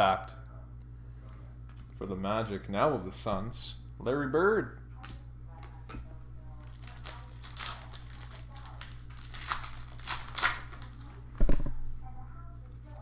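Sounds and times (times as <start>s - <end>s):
packaging crinkling and rustling: 6.5s - 11.2s.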